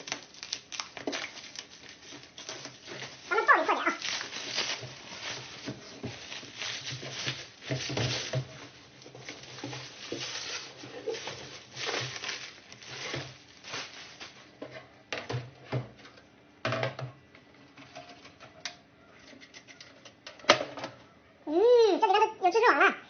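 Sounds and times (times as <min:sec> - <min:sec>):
scraping and rustling: 0:00.0 - 0:16.2.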